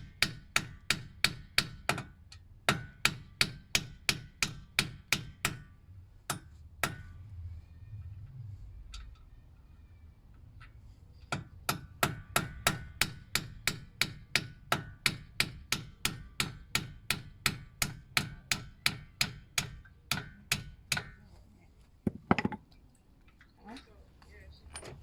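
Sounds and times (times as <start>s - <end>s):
hammer tapping metal: 0.0s - 2.1s, 2.7s - 7.1s, 11.3s - 21.2s.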